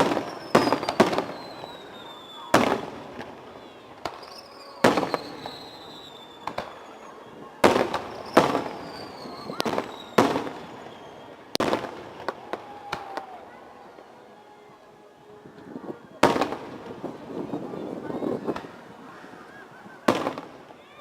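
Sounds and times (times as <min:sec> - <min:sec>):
fireworks bursting: 0:00.0 - 0:14.1, 0:15.4 - 0:21.0
firework whistles sliding down: 0:00.2 - 0:02.6, 0:04.1 - 0:11.4.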